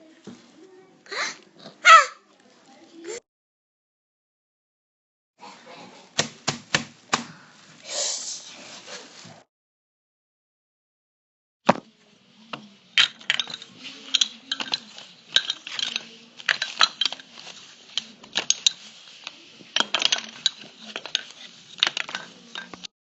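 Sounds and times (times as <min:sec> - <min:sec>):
small hard objects clinking: 0:12.4 - 0:22.9.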